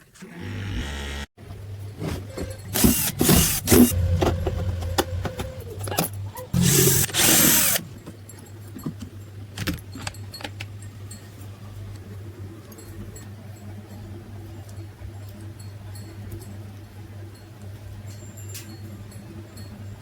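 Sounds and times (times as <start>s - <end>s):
low hum: 2.8s - 7.8s.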